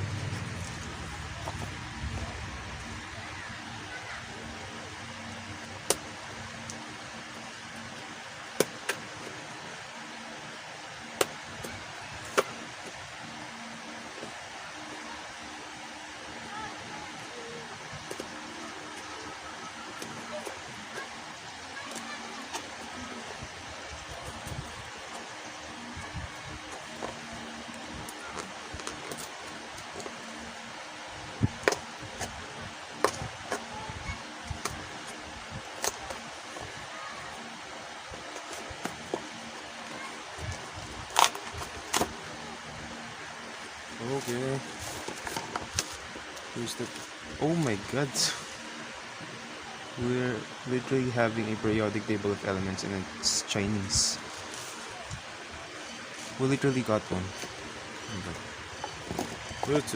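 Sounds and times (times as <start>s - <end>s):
faint hum: 0.0s - 8.6s
faint steady hum: 0.0s - 59.9s.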